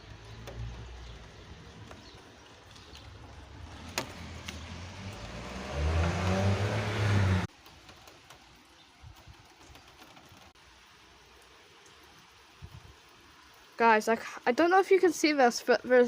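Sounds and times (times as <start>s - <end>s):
car engine hum: 0.0s - 7.5s
tyres hissing on wet road: 0.0s - 7.5s.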